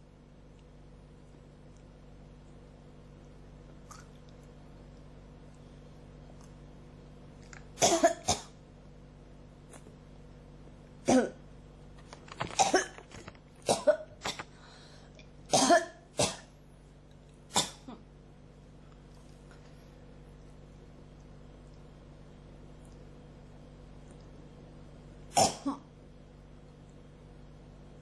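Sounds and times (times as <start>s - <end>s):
person coughing: 7.8s - 8.6s, 11.0s - 11.4s, 12.4s - 13.0s, 13.6s - 14.5s, 15.5s - 16.5s, 17.5s - 18.1s, 25.3s - 25.9s.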